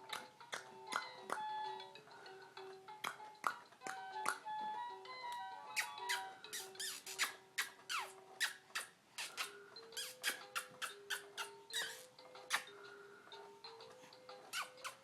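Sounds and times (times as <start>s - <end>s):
high squeaks and chirps: 5.7s - 12.8s, 14.4s - 15.0s.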